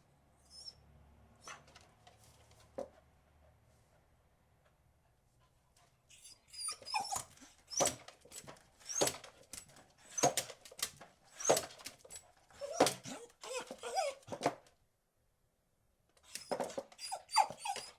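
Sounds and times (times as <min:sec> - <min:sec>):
dog sliding cries: 0:06.2 - 0:08.2, 0:12.6 - 0:14.5, 0:16.3 - 0:17.9.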